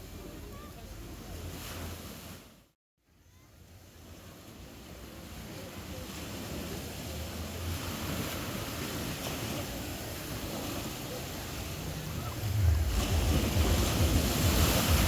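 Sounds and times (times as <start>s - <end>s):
gentle surf washing onto beach: 3.6s - 15.0s
wind rumbling on microphone: 6.6s - 15.0s.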